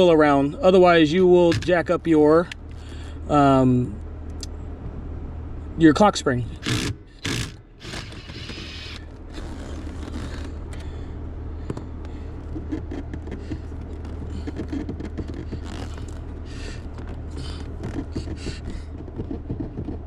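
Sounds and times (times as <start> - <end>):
steady low hum: 0.0 - 20.0
metal parts scraping and clicking: 6.6 - 10.8.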